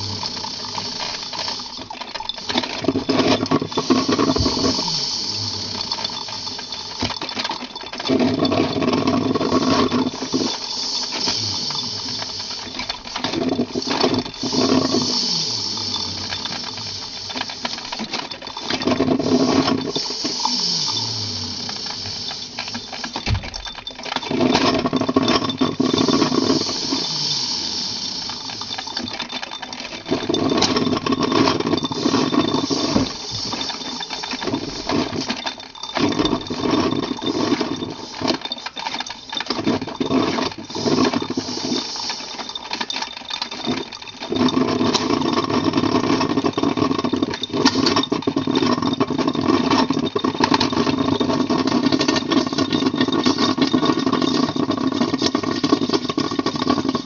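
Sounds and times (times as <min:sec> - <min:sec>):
electric motor running: 0:00.0 - 0:29.2, 0:30.0 - 0:35.4, 0:36.0 - 0:39.4, 0:40.5 - 0:42.8
clatter: 0:00.0 - 0:57.0.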